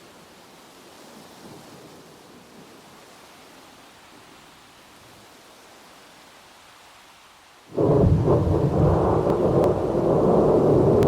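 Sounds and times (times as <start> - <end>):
steady rain hiss: 0.0 - 11.0
low thunder rumble: 7.8 - 11.0.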